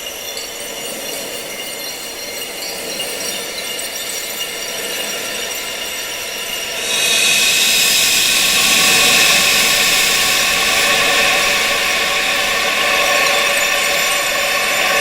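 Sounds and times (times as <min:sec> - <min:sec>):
rushing wind: 0:04.4 - 0:15.0.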